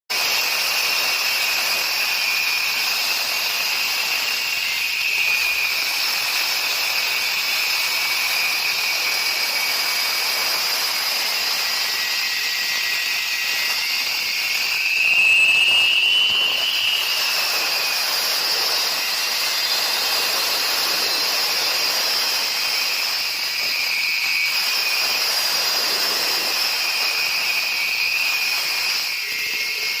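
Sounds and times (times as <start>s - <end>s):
concrete cutting machine whining: 0.1s - 30.0s.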